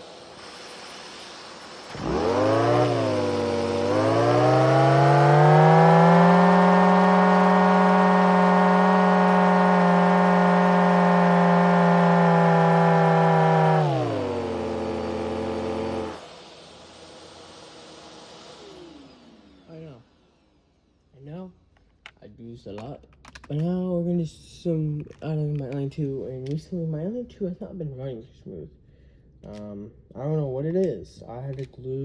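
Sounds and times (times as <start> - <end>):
turbine whine: 0.0 - 21.5.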